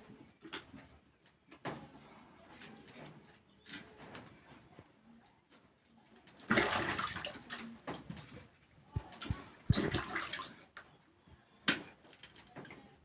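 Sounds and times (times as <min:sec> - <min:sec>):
water splashing: 0:06.4 - 0:07.7, 0:09.2 - 0:10.8.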